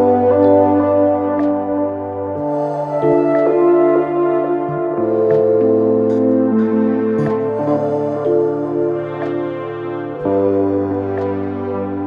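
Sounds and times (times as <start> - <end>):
soft ambient keyboard chords: 0.0 - 12.0.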